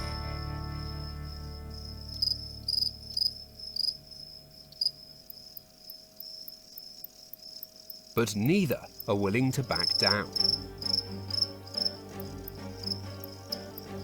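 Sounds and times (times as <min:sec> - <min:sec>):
crickets buzzing: 0:00.0 - 0:14.0
loud short cricket chirps: 0:00.0 - 0:14.0.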